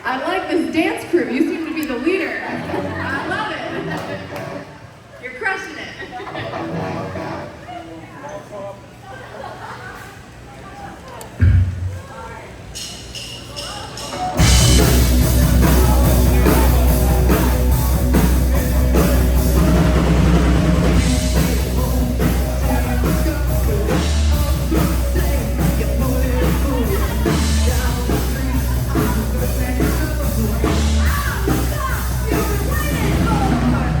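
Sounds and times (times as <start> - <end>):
loud rock music with singing: 14.2 - 34.0.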